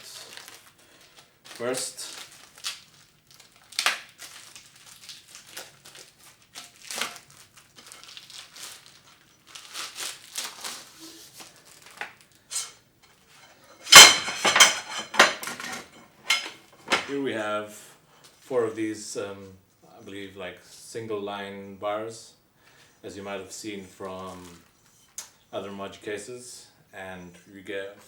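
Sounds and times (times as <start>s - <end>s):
packaging crinkling: 0.0s - 12.5s
metal bars clattering: 13.8s - 17.2s.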